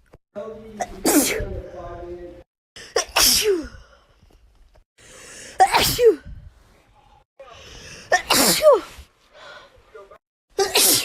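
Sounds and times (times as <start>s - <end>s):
woman sneezing: 2.9s - 3.8s, 5.6s - 6.3s, 8.1s - 9.0s, 10.6s - 11.0s
in-breath: 3.6s - 5.6s, 6.2s - 8.1s, 8.8s - 9.8s.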